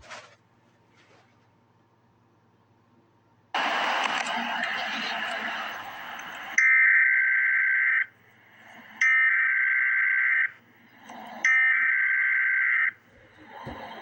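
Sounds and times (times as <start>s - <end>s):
digital data tone bursts: 4.7s - 10.6s, 11.4s - 13.0s.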